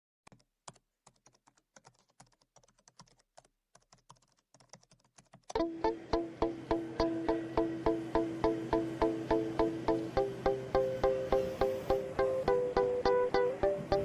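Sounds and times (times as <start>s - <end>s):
keyboard typing clicks: 0.2s - 5.6s
plucked-string music with beat: 5.6s - 14.0s.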